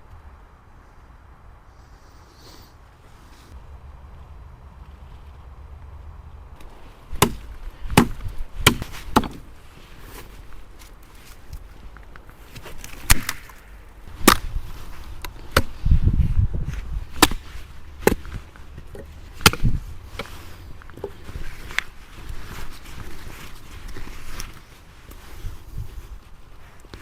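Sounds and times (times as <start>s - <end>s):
wind rumbling on microphone: 0.0s - 27.0s
sharp chopping strikes: 7.1s - 9.4s, 13.0s - 13.6s, 14.2s - 14.5s, 15.5s - 15.8s, 17.2s - 18.4s, 19.4s - 19.8s.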